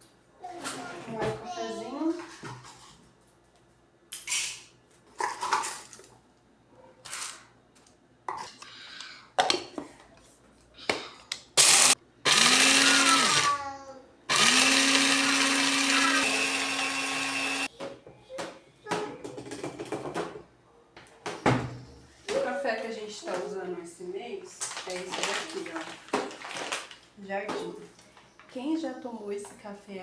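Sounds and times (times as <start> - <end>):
electric coffee grinder running: 11.6 - 13.6, 14.3 - 17.7.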